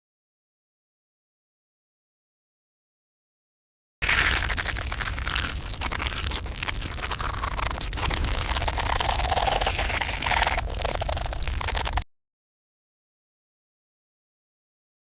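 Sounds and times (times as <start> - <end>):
crackling static noise: 4.0 - 12.0.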